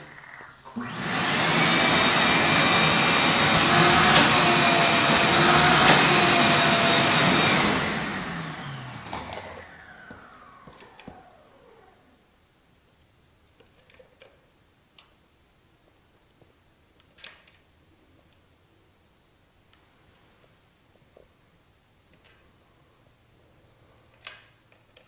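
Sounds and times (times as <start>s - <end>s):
vacuum cleaner falling whine: 0.0s - 12.2s
vacuum cleaner running: 0.0s - 12.2s.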